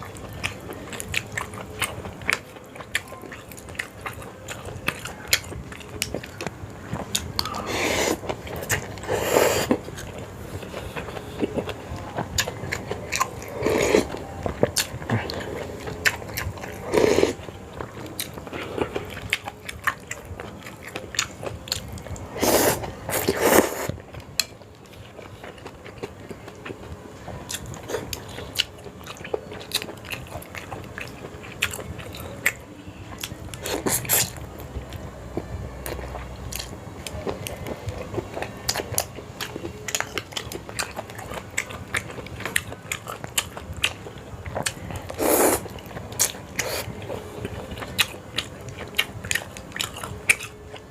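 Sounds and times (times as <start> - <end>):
person chewing and biting: 35.8 - 50.8.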